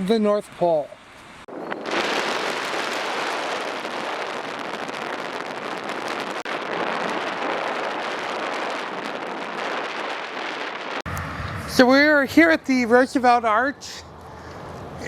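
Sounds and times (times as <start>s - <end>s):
wind rushing: 1.4s - 13.4s
car road noise: 11.0s - 15.0s.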